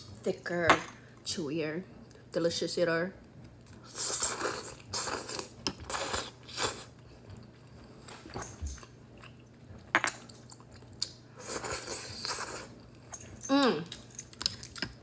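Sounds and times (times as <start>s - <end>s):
noodles being chewed: 10.2s - 15.0s.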